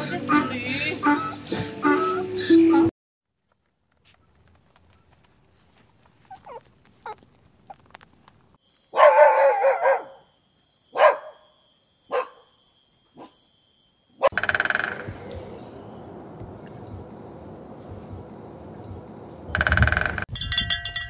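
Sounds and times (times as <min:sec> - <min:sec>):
dog barking: 0:08.9 - 0:10.3, 0:10.9 - 0:11.5, 0:12.1 - 0:12.5, 0:13.2 - 0:13.4.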